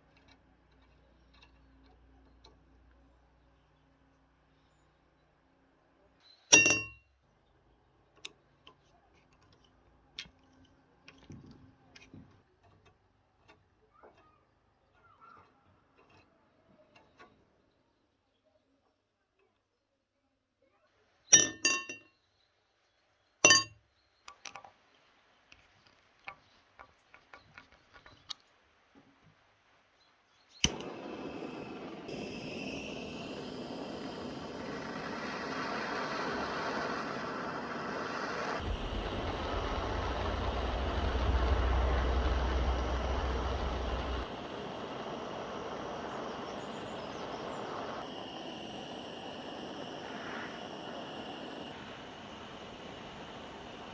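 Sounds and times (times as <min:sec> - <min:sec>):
outdoor background noise: 0:00.0 - 0:53.9
low rumble: 0:30.8 - 0:48.0.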